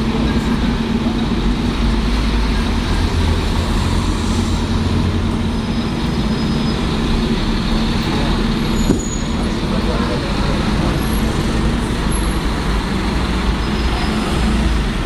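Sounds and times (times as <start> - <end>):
heavy vehicle rumbling: 0.0 - 15.0.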